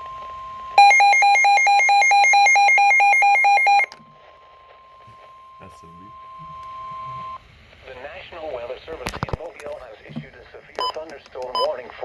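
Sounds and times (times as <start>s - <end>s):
warbling electronic alarm beeping: 0.8s - 3.9s.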